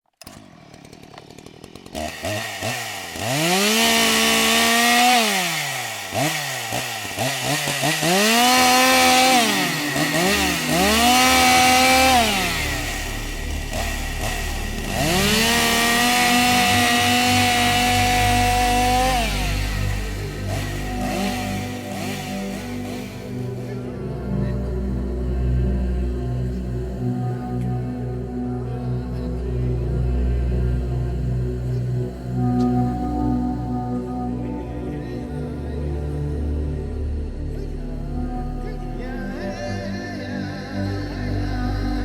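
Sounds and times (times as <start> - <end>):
chainsaw engine revving: 0.1 - 34.3.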